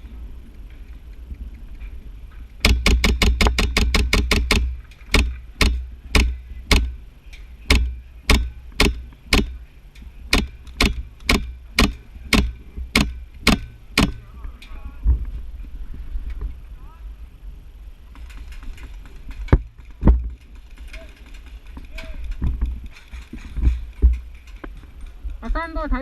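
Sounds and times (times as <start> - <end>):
airsoft gun shots: 2.6 - 7.0, 7.7 - 9.6, 10.3 - 14.3.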